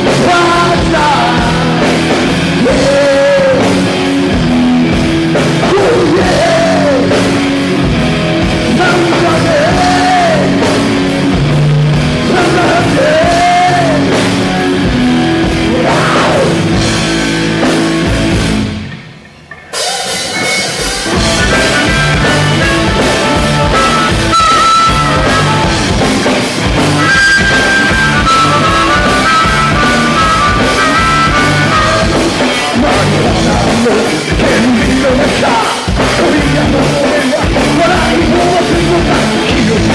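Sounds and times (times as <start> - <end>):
person singing: 0.0 - 4.0, 5.5 - 7.5, 8.6 - 10.9, 12.2 - 14.2, 15.6 - 16.6, 27.0 - 39.9
high repeating guitar line: 0.0 - 39.9
rock band playing live: 0.0 - 39.9.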